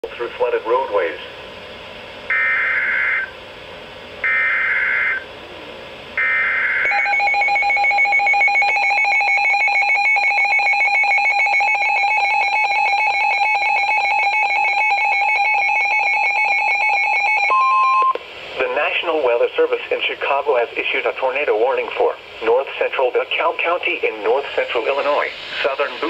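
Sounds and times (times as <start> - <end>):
harsh two-tone alarm: 2.3 - 3.4, 4.2 - 5.3, 6.2 - 18.2.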